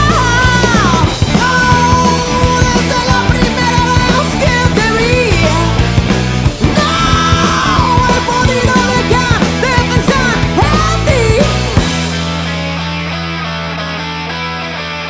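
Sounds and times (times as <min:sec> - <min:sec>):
psychedelic rock band playing: 0:00.0 - 0:15.0.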